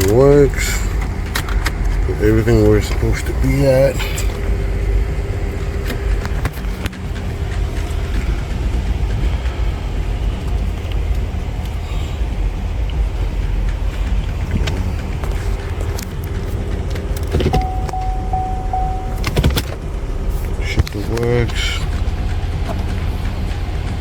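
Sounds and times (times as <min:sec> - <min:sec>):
car rumble: 0:00.0 - 0:24.0
faint steady hum: 0:17.4 - 0:20.2.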